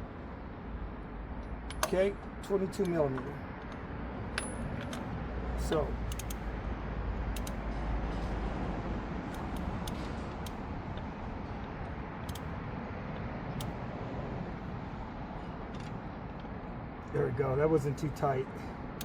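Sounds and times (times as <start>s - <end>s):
low outdoor rumble: 0.0s - 19.0s
ratchet clicking: 5.7s - 6.6s, 7.3s - 7.7s, 9.3s - 13.9s.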